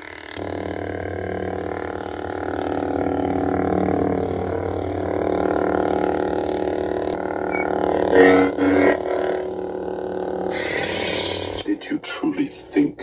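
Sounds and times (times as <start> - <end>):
lightsaber humming: 0.4 - 13.0
lightsaber ignition: 7.5 - 12.1.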